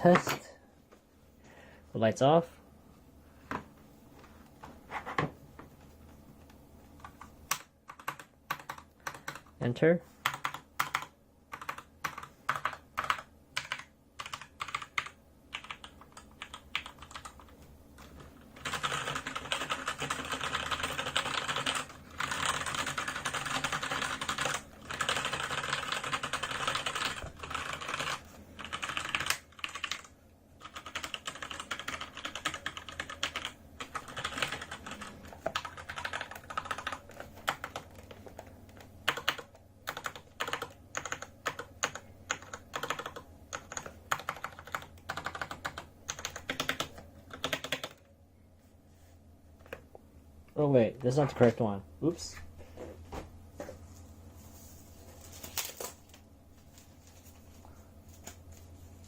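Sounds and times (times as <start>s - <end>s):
mechanical keyboard typing: 7.0s - 9.5s, 10.2s - 48.0s.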